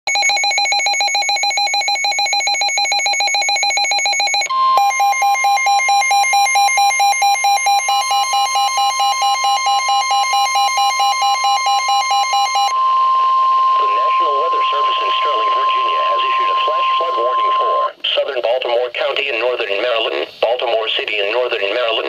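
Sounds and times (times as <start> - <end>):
electronic alarm beeps: 0.1 - 17.9
steady alert tone: 13.8 - 17.9.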